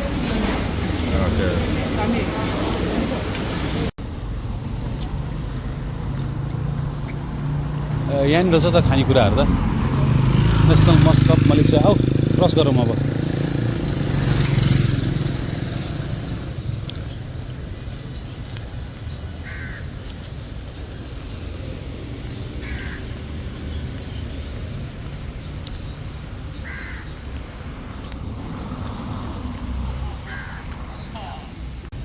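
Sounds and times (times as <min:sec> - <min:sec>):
vehicle passing: 0:00.0 - 0:19.0
road traffic rumble: 0:00.0 - 0:32.0
crow cawing: 0:19.4 - 0:20.0, 0:22.6 - 0:23.3, 0:26.6 - 0:27.3, 0:30.2 - 0:31.1.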